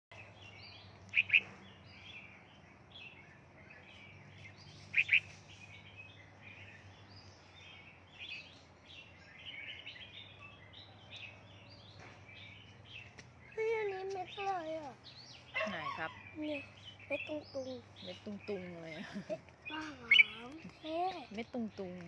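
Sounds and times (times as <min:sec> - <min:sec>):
bulbuls chirping: 0:00.1 - 0:22.0.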